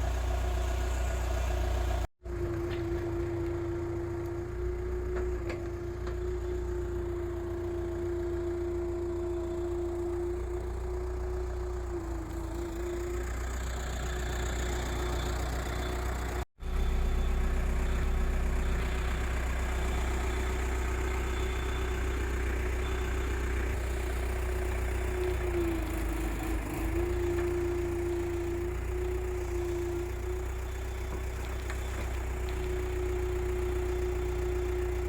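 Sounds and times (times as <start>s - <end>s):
excavator diesel engine running: 0.0s - 35.0s.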